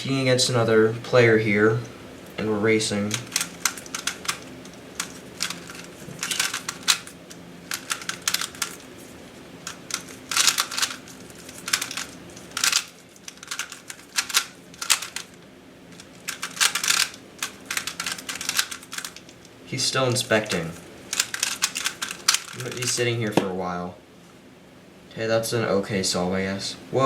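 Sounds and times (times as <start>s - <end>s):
puzzle cube plastic clicking: 3.1s - 8.9s, 9.7s - 15.4s, 16.0s - 19.4s, 20.5s - 23.4s.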